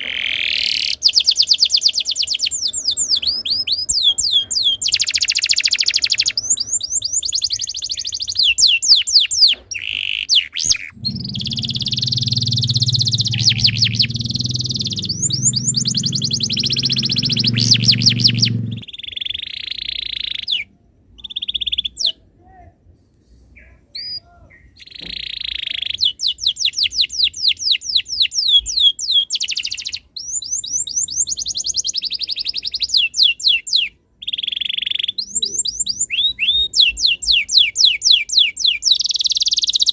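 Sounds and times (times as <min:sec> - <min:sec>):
canary singing trills: 0:00.0 - 0:22.1
low hum: 0:10.9 - 0:18.8.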